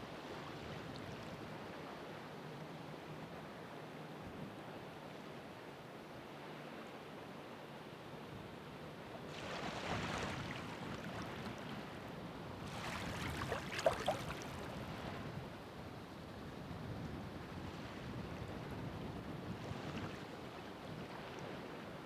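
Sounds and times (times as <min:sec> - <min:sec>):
ocean waves breaking: 0:09.3 - 0:15.2.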